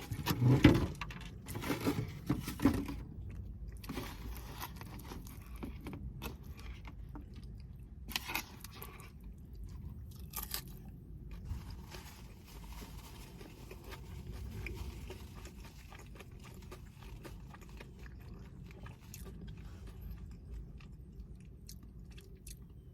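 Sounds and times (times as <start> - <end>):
chewing and crunching food: 0.0 - 22.9
low steady rumble: 0.0 - 22.9.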